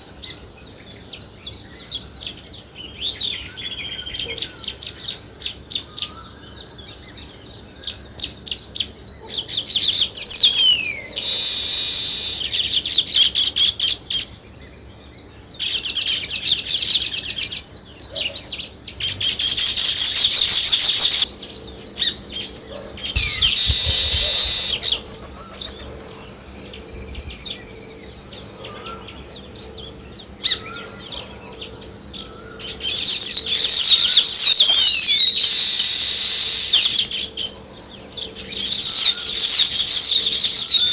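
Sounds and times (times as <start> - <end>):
dense overlapping bird chatter: 0.0 - 40.9
birds chirping: 14.2 - 40.9.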